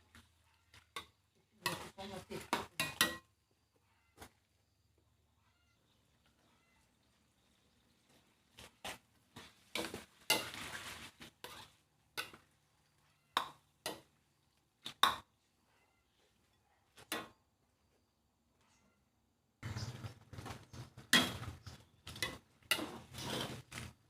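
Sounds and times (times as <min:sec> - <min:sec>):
pots and utensils clinking: 0:00.7 - 0:03.3, 0:09.7 - 0:12.5, 0:21.0 - 0:23.7
clattering of kitchenware: 0:02.5 - 0:03.3.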